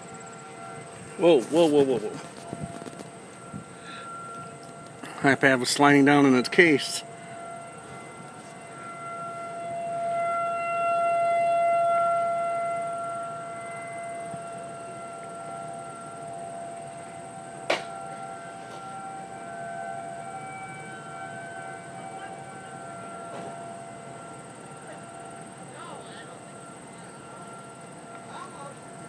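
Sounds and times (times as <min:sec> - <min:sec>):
warning siren wailing: 0:00.0 - 0:29.0
sharp knock: 0:17.7 - 0:17.9.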